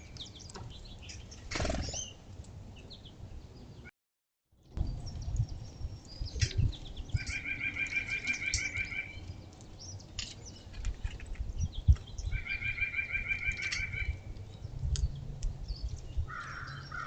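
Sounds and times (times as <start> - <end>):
small songbirds chirping: 0.0 - 3.9, 4.5 - 17.0
rapid bird trill: 7.1 - 9.3, 12.2 - 14.3.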